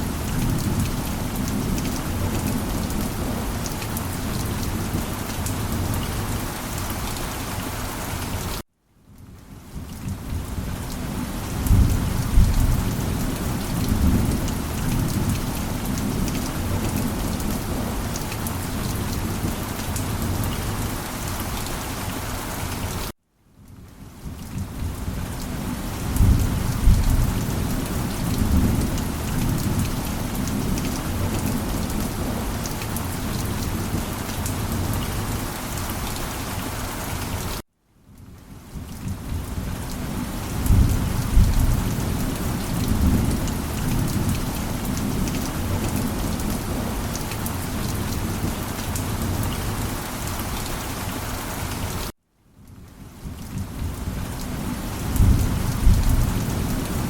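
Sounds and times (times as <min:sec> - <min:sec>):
heavy rain: 0:00.0 - 0:57.0
low rolling thunder: 0:10.1 - 0:18.0, 0:26.0 - 0:32.6, 0:39.1 - 0:47.1, 0:55.0 - 0:57.0.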